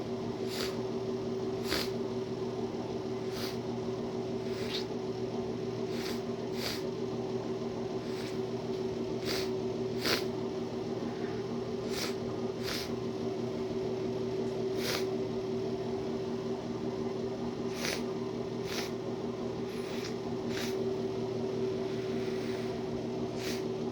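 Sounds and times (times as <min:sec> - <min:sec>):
electrical hum: 0:00.0 - 0:23.9
person sniffing wetly: 0:00.4 - 0:00.8, 0:01.6 - 0:02.0, 0:03.2 - 0:03.7, 0:04.4 - 0:05.0, 0:05.8 - 0:06.9, 0:08.0 - 0:08.5, 0:09.2 - 0:10.4, 0:11.8 - 0:13.0, 0:14.7 - 0:15.2, 0:17.7 - 0:19.0, 0:19.6 - 0:20.9, 0:21.8 - 0:23.7.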